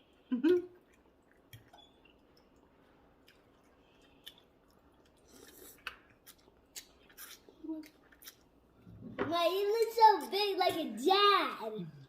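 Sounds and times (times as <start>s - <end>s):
soft chewing sounds: 0.0s - 9.0s.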